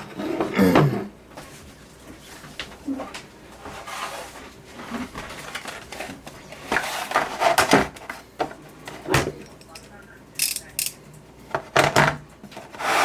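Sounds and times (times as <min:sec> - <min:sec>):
ratchet set clacking: 0:09.6 - 0:11.0.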